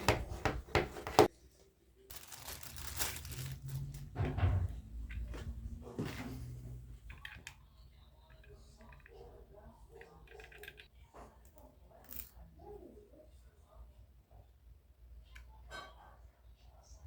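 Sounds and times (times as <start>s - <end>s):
packaging rustling: 2.1s - 4.1s
heavy thump: 4.1s - 4.9s.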